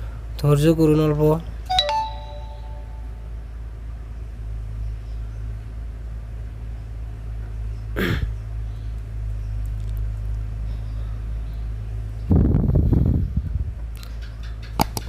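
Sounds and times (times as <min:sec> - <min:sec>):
low hum: 0:01.7 - 0:03.8.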